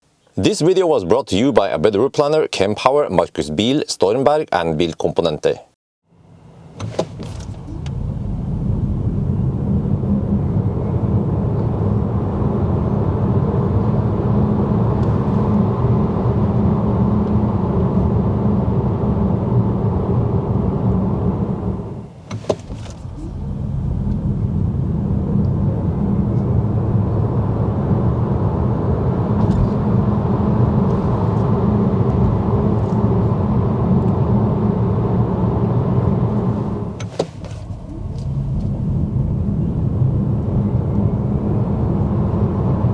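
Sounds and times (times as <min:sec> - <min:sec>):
tyre and road noise: 0:06.8 - 0:10.0, 0:21.6 - 0:24.6, 0:36.5 - 0:39.2.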